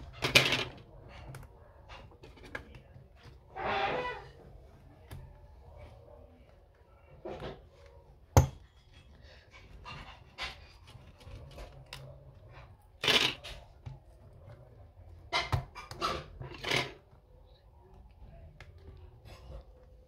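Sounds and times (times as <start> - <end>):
parts and tools scraping and rustling: 0.0 - 4.7, 8.6 - 17.2.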